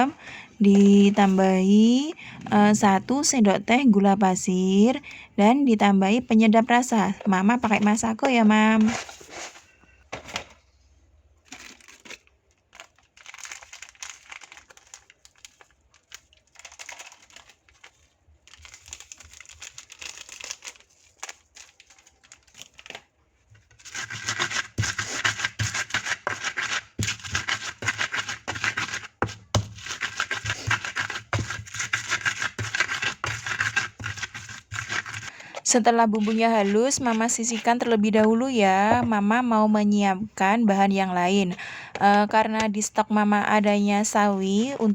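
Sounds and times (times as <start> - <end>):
pestle grinding in a mortar: 24.0 - 35.3, 36.2 - 37.7.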